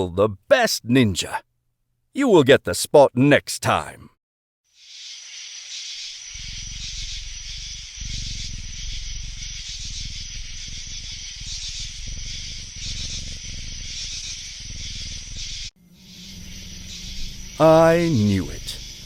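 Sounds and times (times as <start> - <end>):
steady hiss: 4.8 - 19.0
low rough rumble: 6.4 - 17.6.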